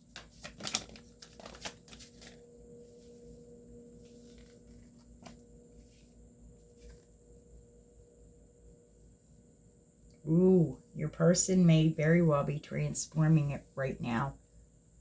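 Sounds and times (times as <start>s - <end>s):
cards rustling and flicking: 0.0s - 2.5s, 4.1s - 5.4s.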